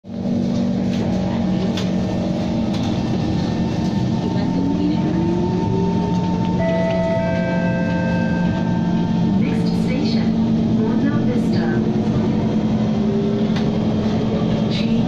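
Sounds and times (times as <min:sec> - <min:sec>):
metro train electric hum: 0:00.0 - 0:15.0.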